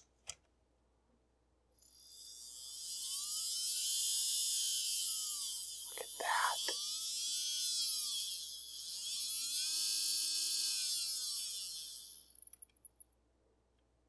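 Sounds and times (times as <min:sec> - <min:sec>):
model locomotive motor whine: 0:01.8 - 0:12.5.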